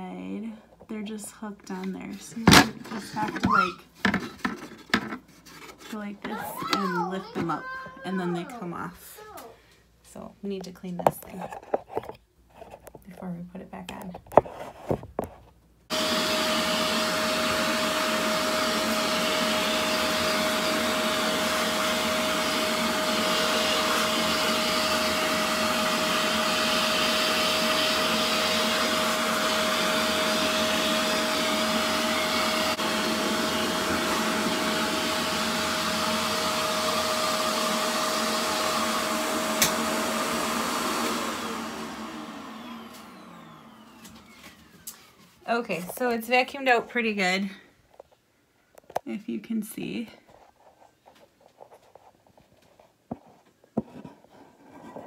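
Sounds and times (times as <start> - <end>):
vacuum cleaner running: 2.0 - 4.3, 5.9 - 8.8, 15.9 - 45.8.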